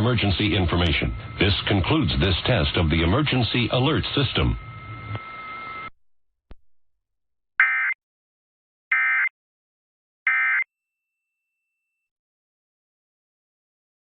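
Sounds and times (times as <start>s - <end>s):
screechy digital data tones: 0.0s - 5.9s, 7.6s - 8.0s, 10.3s - 10.7s.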